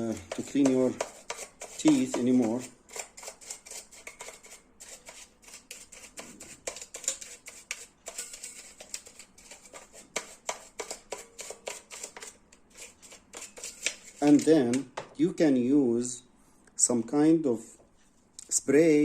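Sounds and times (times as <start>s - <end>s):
toothbrush scrubbing plastic: 0.0s - 14.8s.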